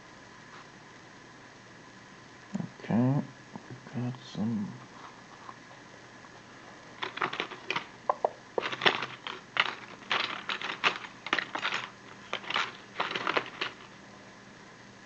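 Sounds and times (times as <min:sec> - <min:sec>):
lock parts clicking and scraping: 0:07.0 - 0:07.9, 0:08.6 - 0:14.0.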